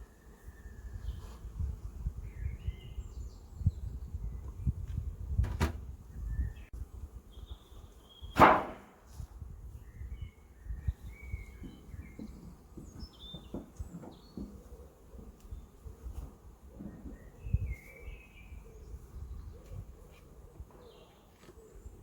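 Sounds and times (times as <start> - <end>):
birds chirping and whistling: 7.4 - 8.4, 9.8 - 14.8, 16.8 - 22.0.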